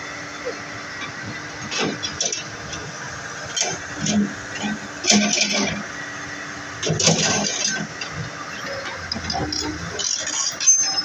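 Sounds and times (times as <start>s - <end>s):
excavator diesel engine running: 0.0s - 11.0s.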